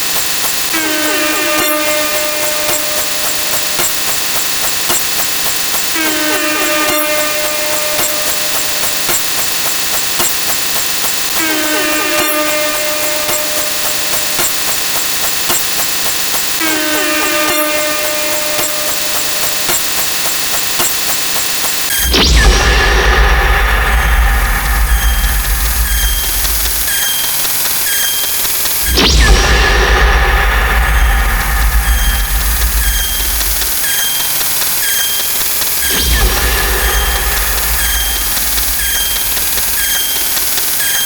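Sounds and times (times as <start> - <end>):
loud mechanical hiss: 0.0 - 41.0
short pitched squeal: 21.9 - 28.3, 35.8 - 41.0
loud low rumble: 22.1 - 26.8, 29.0 - 33.6, 35.9 - 39.6.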